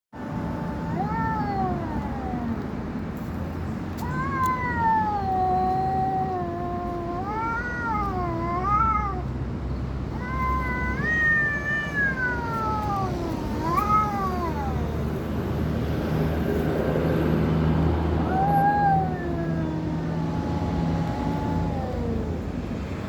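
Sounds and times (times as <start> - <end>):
cat yowling: 0.3 - 2.6, 4.0 - 9.3, 10.1 - 15.1, 18.2 - 22.6.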